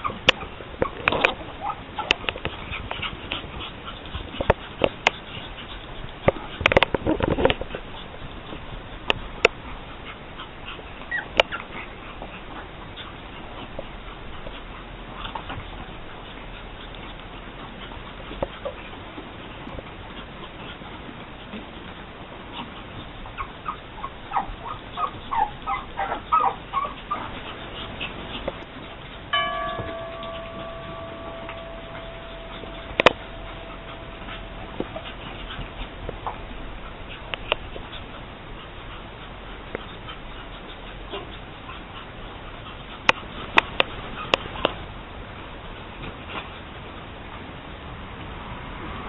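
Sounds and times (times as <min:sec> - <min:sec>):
puppy whimpering and snuffling: 0:10.7 - 0:12.4, 0:22.5 - 0:41.8
steady tone with overtones: 0:27.3 - 0:39.7
sharp clicks and knocks: 0:27.4 - 0:38.1.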